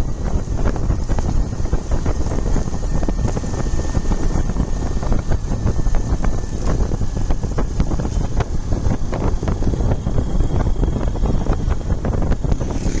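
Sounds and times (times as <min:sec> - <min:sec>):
wind buffeting microphone: 0:00.0 - 0:13.0.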